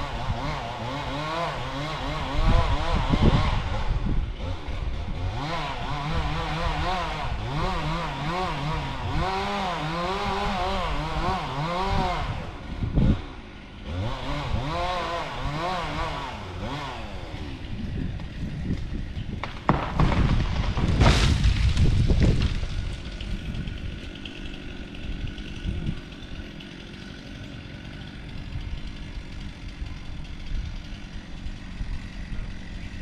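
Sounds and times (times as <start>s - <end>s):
heavy crashing thuds: 19.4s - 23.1s
engine idling: 22.3s - 33.0s.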